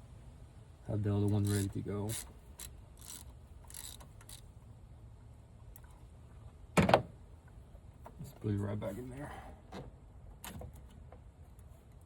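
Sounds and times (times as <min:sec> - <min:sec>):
ratchet ratcheting: 0:01.3 - 0:04.4.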